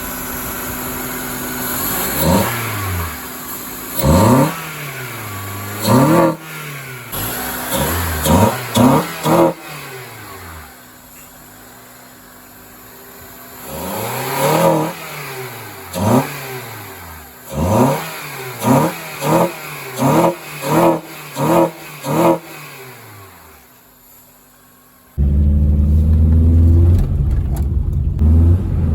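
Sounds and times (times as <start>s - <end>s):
car engine revving: 1.3s - 11.3s, 13.4s - 23.7s, 25.2s - 28.9s.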